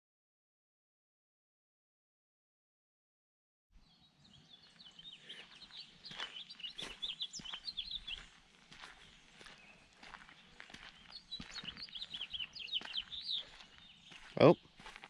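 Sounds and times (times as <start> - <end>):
small birds chirping: 3.8 - 15.0.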